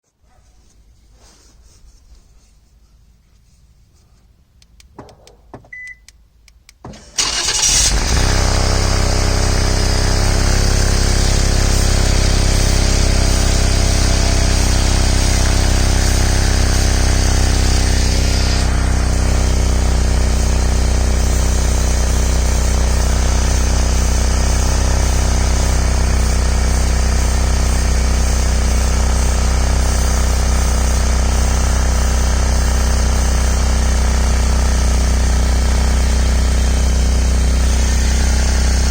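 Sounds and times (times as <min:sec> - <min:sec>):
car engine starting and idling: 0:06.7 - 0:38.9
exhaust hiss: 0:06.8 - 0:38.9.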